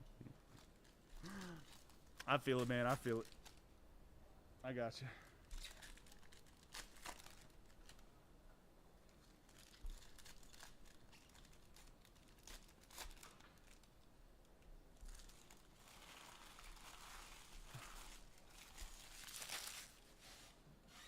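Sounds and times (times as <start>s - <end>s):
packaging crinkling and tearing: 0.4s - 3.6s, 5.4s - 8.1s, 9.0s - 14.1s, 15.0s - 20.3s.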